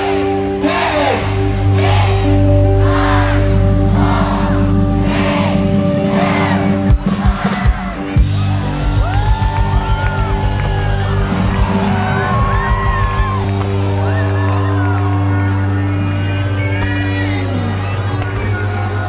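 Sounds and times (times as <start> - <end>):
loud music: 0.0 - 19.0
crowd cheering and whooping: 3.0 - 19.0.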